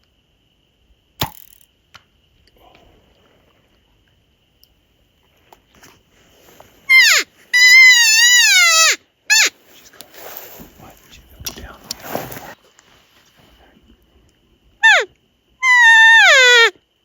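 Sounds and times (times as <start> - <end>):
elk mews: 6.9 - 9.5, 14.8 - 16.7.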